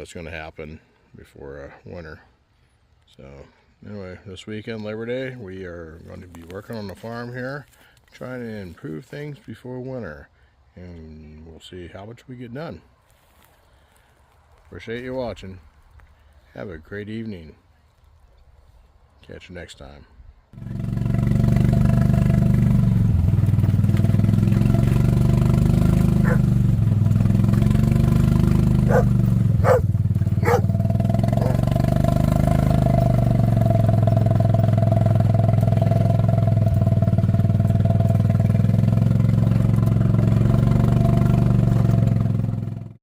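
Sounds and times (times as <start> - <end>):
motor running loudly: 26.0 - 26.4, 28.9 - 29.8, 30.4 - 30.7.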